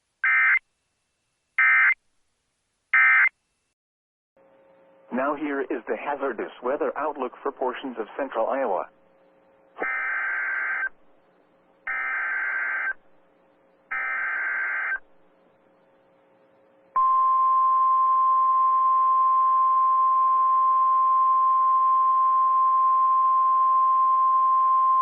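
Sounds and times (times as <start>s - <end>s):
steady warning alarm tone: 9.8s - 10.9s, 11.9s - 13.0s, 13.9s - 15.0s.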